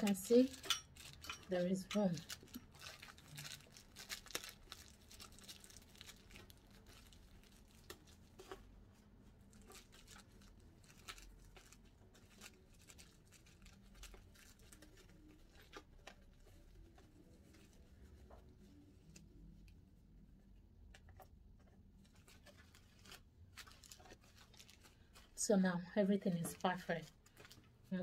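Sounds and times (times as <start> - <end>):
fabric rustling and clicks: 0.0 - 3.6.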